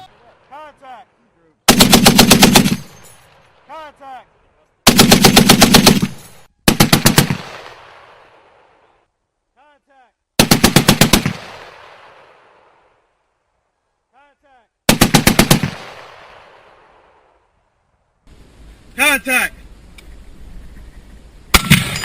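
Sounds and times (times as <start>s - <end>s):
heavy machine gun bursts: 1.7s - 3.0s
gunfire echo: 1.7s - 3.7s, 4.9s - 8.8s, 10.4s - 13.0s, 14.9s - 17.5s, 21.5s - 22.0s.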